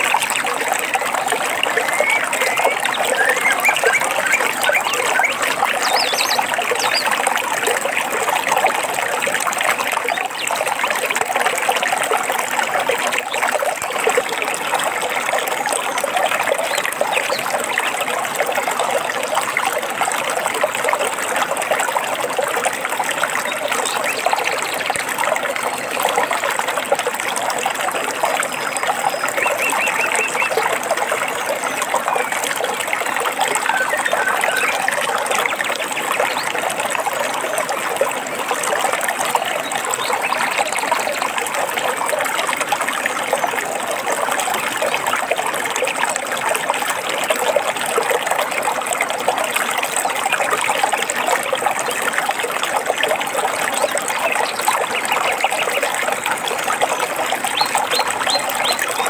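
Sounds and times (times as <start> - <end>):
stream babbling over stones: 0.0 - 59.0
bird chirps: 1.6 - 7.1, 29.2 - 30.6.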